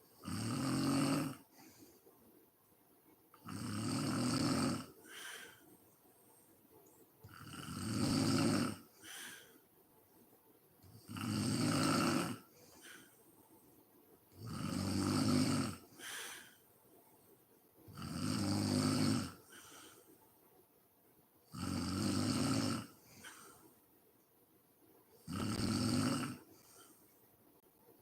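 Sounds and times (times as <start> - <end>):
woman snoring: 0.2 - 1.5, 3.4 - 5.6, 7.3 - 9.5, 10.9 - 13.1, 14.4 - 16.6, 17.9 - 20.0, 21.5 - 23.6, 25.2 - 26.9.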